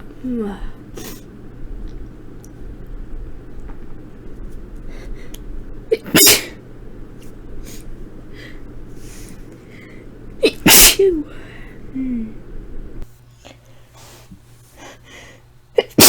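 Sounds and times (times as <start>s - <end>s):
faint breaths: 4.8s - 5.4s, 7.6s - 10.3s, 11.3s - 12.6s, 13.3s - 15.6s
woman sneezing: 5.9s - 6.6s, 10.4s - 11.3s, 15.8s - 16.0s.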